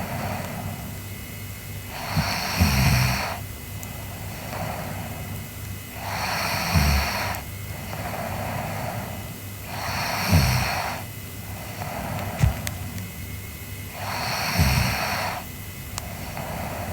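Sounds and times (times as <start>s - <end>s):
girl snoring: 1.9s - 5.3s, 5.9s - 12.8s, 13.9s - 16.9s
low thump: 12.4s - 12.7s.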